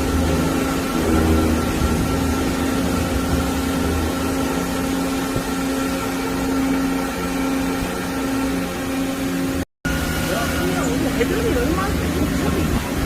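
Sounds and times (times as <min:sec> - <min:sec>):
machining center humming: 0:00.0 - 0:13.0.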